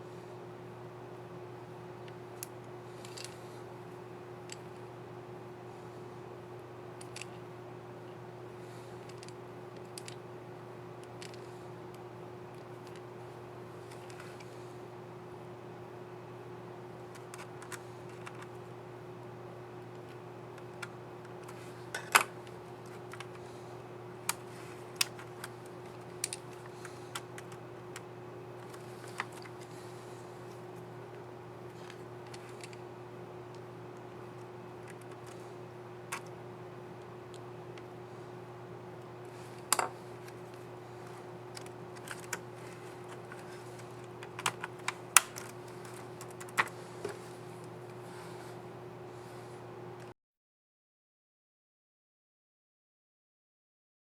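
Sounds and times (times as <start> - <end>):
steady low hum: 0.0 - 50.1
sharp plastic snap: 44.4 - 45.5.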